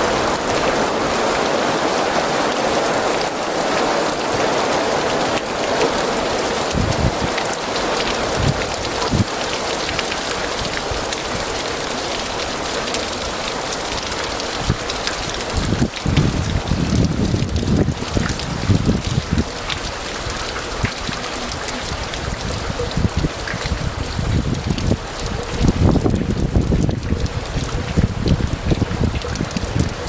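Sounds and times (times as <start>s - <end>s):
wind buffeting microphone: 0.0s - 11.6s, 14.4s - 30.0s
heavy rain falling: 0.0s - 30.0s.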